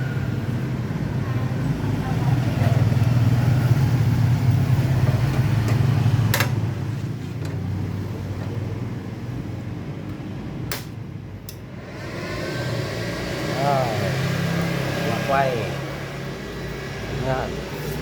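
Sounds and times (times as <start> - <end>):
low motor hum: 11.3 - 18.0.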